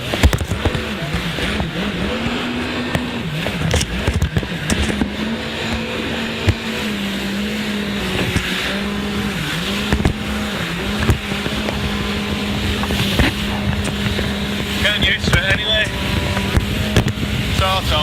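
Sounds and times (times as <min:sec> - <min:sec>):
jet ski engine running: 0:00.0 - 0:18.0
hull knocking on waves: 0:09.7 - 0:18.0.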